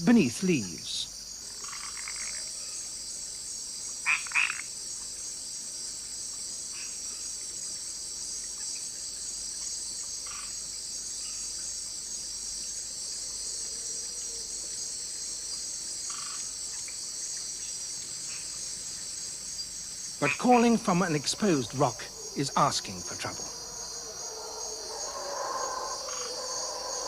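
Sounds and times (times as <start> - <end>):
frogs calling: 0.0 - 5.2, 6.6 - 27.0
high-pitched insect chorus: 0.0 - 27.0.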